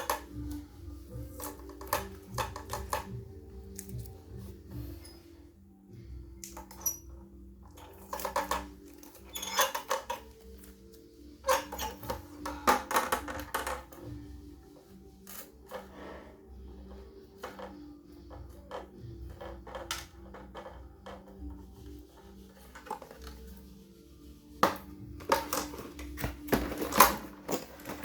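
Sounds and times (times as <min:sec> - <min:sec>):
clatter of objects being handled: 0:00.0 - 0:05.2, 0:06.4 - 0:14.2, 0:24.5 - 0:28.0
quiet background music: 0:00.0 - 0:28.0.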